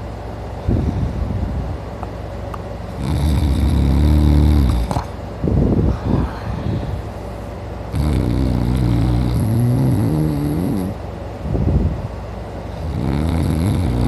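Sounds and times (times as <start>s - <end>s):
man snoring loudly: 3.0s - 5.0s, 7.9s - 11.0s, 12.8s - 14.0s
quiet breath: 5.8s - 7.2s.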